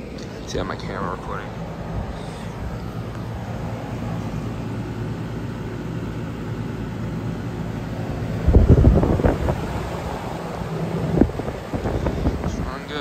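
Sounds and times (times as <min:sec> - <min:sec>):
air conditioner unit humming: 0:00.0 - 0:13.0
low rumbling thumps on microphone: 0:08.4 - 0:09.7.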